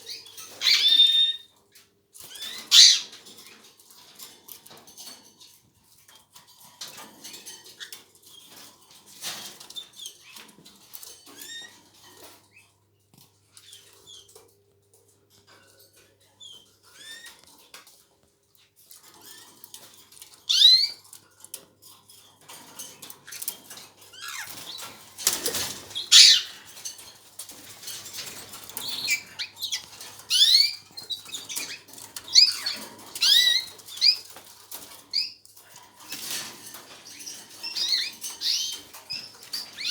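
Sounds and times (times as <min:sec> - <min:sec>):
canaries chirping: 0:00.0 - 0:01.6, 0:02.2 - 0:05.2, 0:06.8 - 0:12.6, 0:19.0 - 0:39.9.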